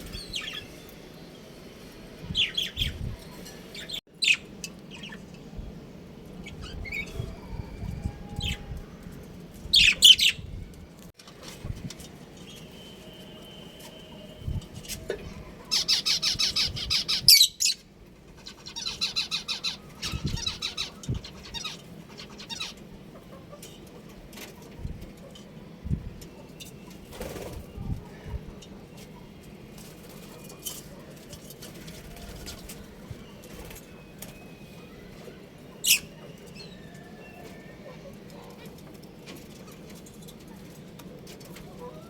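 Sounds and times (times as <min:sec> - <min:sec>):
wings flapping: 0:27.1 - 0:27.8.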